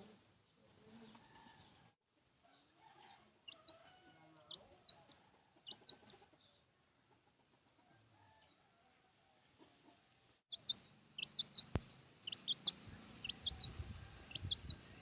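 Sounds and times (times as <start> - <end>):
chicken calling: 10.5 - 15.0.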